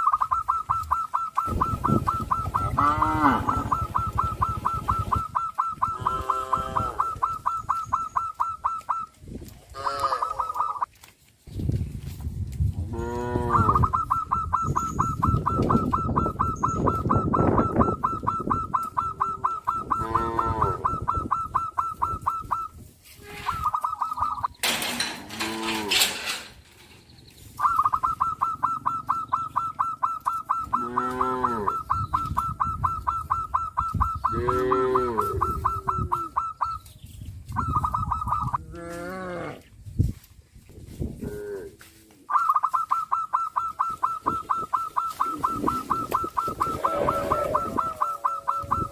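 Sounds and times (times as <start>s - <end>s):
cattle mooing: 2.6s - 4.1s, 5.9s - 7.2s, 9.7s - 10.5s, 12.9s - 13.8s, 19.0s - 20.8s, 25.0s - 26.5s, 30.6s - 31.8s, 34.3s - 36.4s, 46.4s - 48.9s.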